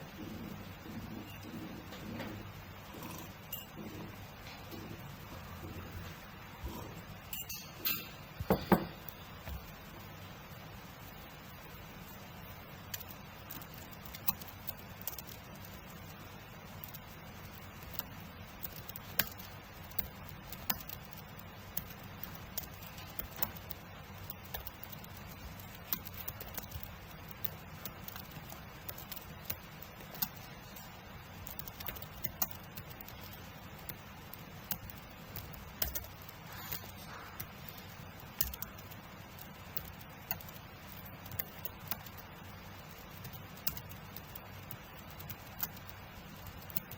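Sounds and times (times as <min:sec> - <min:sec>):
steady background hiss: 0:00.0 - 0:46.9
computer keyboard typing: 0:12.9 - 0:46.9.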